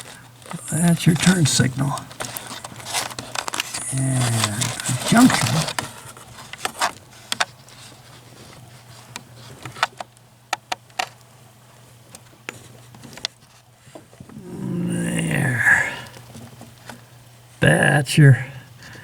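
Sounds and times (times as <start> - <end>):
steady low hum: 0.0 - 9.4, 13.8 - 19.0.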